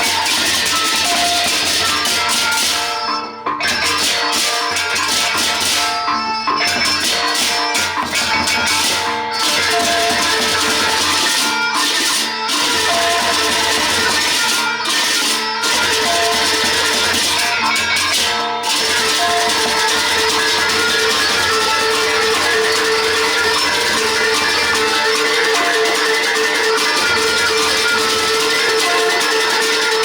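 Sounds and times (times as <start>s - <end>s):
drum and gong ensemble: 0.0s - 30.0s.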